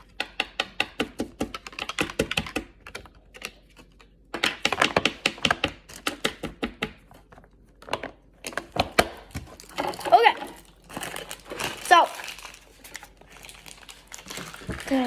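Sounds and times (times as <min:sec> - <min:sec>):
rapid clicking and tapping: 0:00.0 - 0:03.6.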